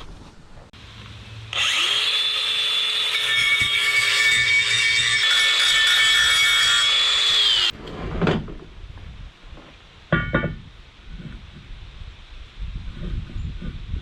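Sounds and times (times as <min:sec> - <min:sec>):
angle grinder whining: 0:01.4 - 0:07.8
metal clank ringing: 0:10.1 - 0:10.6.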